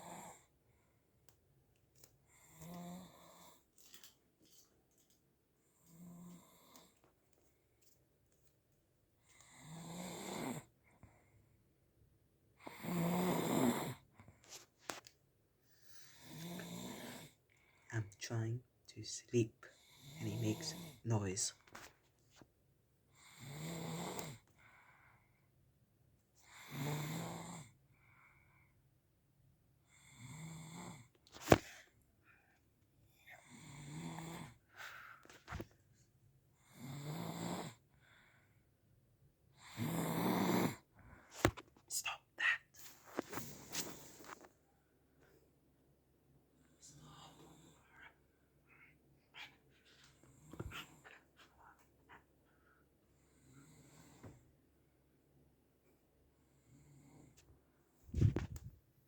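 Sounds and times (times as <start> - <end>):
man snoring: 9.6 - 10.7, 12.7 - 14.0, 16.2 - 17.4, 19.9 - 21.1, 23.3 - 24.4, 26.5 - 27.7, 33.4 - 34.6, 36.8 - 37.8, 39.6 - 40.8
person snoring: 12.7 - 14.0, 16.0 - 17.3, 39.7 - 40.8.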